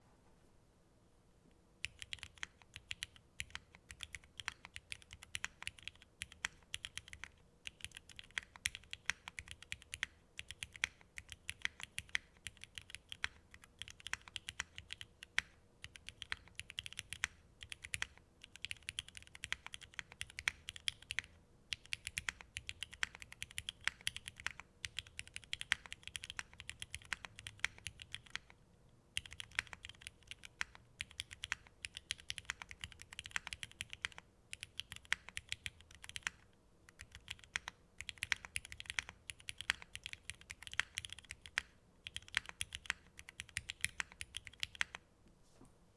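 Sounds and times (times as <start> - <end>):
mechanical keyboard typing: 1.8 - 28.6, 29.2 - 45.0.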